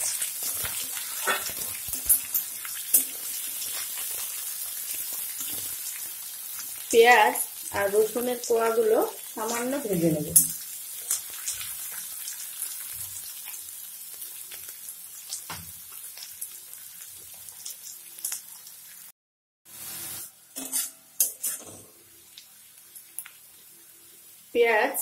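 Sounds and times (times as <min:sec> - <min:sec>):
spatula scraping a pan: 0:00.0 - 0:04.4, 0:19.9 - 0:22.0
onions sizzling in hot oil: 0:00.0 - 0:19.1, 0:19.7 - 0:25.0.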